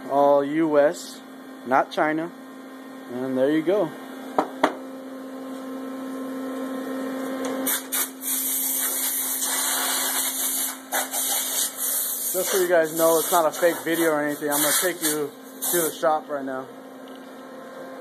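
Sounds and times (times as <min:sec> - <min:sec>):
steady electrical hum: 0:00.0 - 0:18.0
loud hissing spray: 0:07.6 - 0:16.0.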